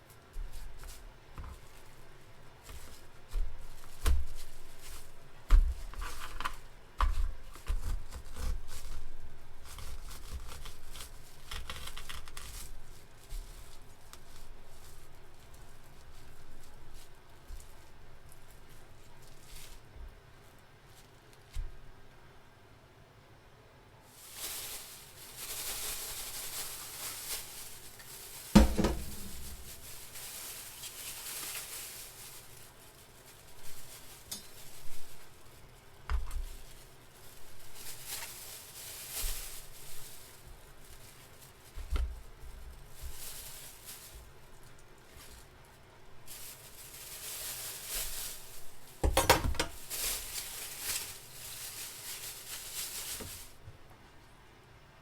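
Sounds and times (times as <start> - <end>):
sharp knocks against pan: 28.6 - 29.6
pans and utensils clattering: 28.6 - 29.8, 49.0 - 49.8.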